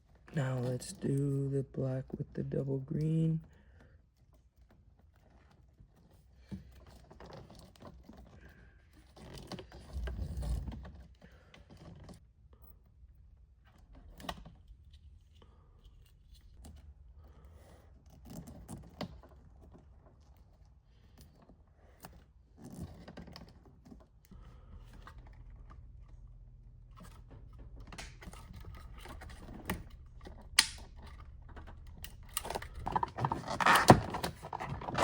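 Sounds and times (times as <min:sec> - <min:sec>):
clicks and snips on wiring connectors: 0:27.8 - 0:33.0.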